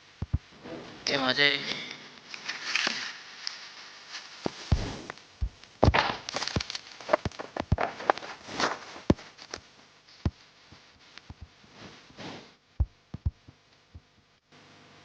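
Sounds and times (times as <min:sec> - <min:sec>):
rustling swishes: 0:03.6 - 0:05.6, 0:07.0 - 0:09.3, 0:11.6 - 0:12.5.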